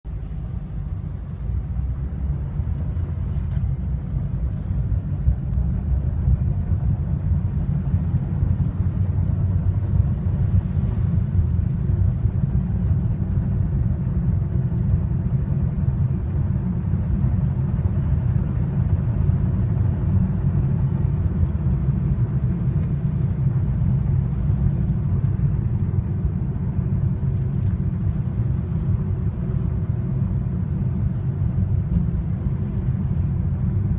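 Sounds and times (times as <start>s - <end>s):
car engine low rumble: 0.0s - 33.9s.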